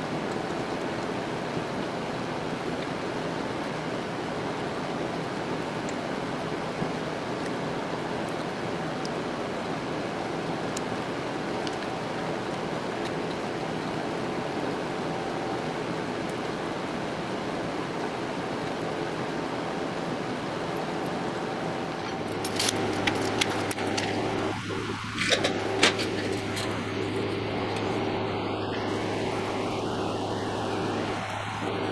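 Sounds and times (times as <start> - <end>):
milling machine running: 10.0 - 31.9.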